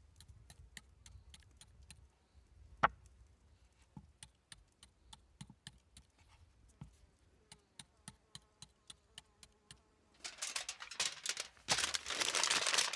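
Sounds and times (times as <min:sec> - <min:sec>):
campfire crackling and popping: 0:10.2 - 0:12.9
dry crinkling rustling: 0:10.2 - 0:12.9.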